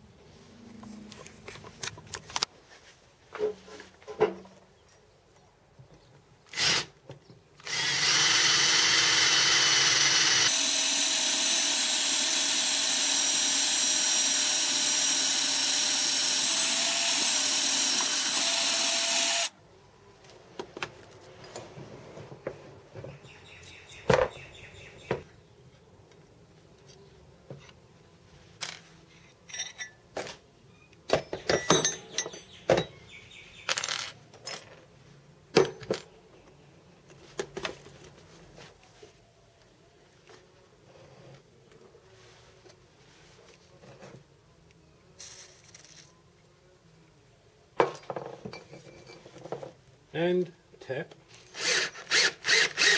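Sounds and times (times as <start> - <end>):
electric drill running: 6.6 - 6.9, 7.6 - 19.5, 51.6 - 52.9
metal tools clicking and knocking: 29.5 - 30.0, 31.1 - 33.0.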